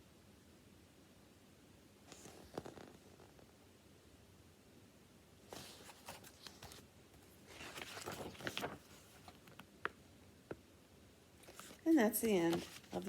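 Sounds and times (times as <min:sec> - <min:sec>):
rustling handling noise: 0:05.5 - 0:10.0, 0:11.4 - 0:13.0.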